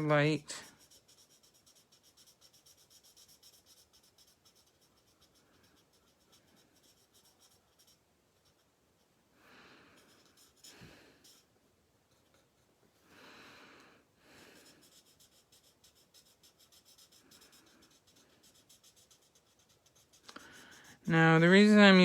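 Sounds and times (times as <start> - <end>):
marker scratching on card: 0.2 - 8.7, 9.9 - 11.5, 14.6 - 21.2.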